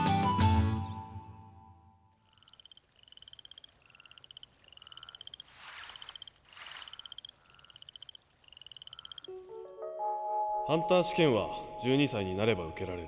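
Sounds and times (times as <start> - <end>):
music: 0.0 - 2.0, 9.3 - 13.0
pulsed high animal trills: 2.3 - 9.3.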